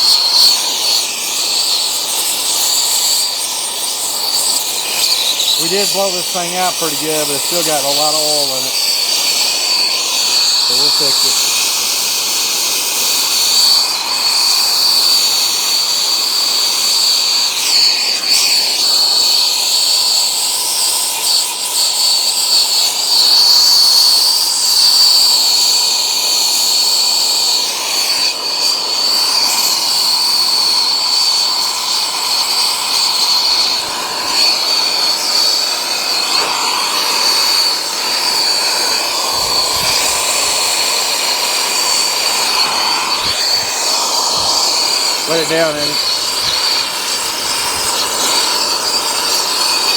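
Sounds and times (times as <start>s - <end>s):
high whistle: 0.0s - 12.1s, 26.8s - 49.9s
compressed gas rushing hiss: 0.0s - 49.9s.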